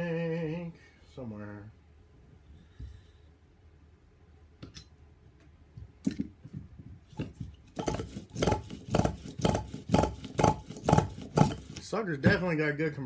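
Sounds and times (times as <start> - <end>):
small engine turned over by hand: 7.8 - 11.8.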